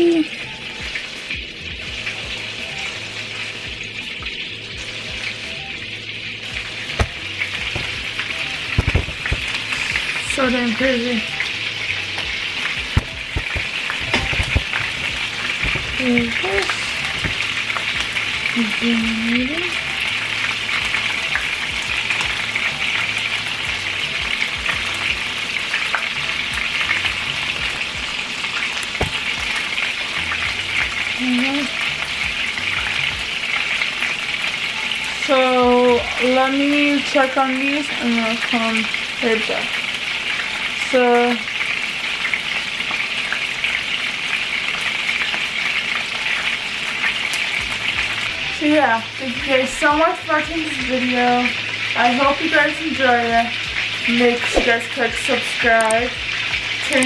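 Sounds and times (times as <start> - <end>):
meatballs sizzling in oil: 0.0 - 57.0
small crackles: 11.1 - 18.8.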